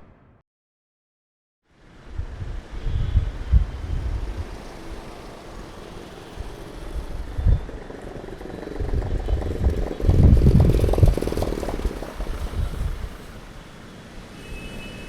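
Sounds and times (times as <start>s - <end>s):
vehicles passing: 1.8s - 15.0s
vehicle engine: 3.7s - 13.6s.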